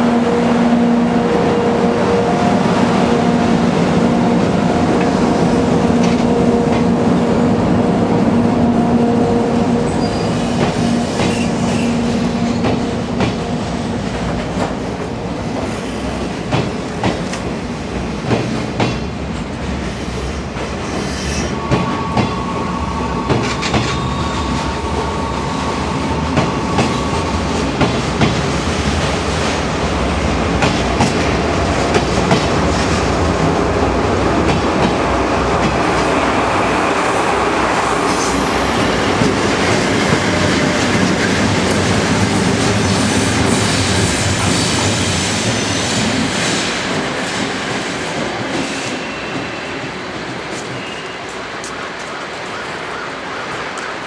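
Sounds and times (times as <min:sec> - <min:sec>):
train rumble: 0:00.0 - 0:54.0
train wheels clicking over rail joints: 0:09.9 - 0:36.4
wheel squeal: 0:21.0 - 0:25.7, 0:38.0 - 0:40.9.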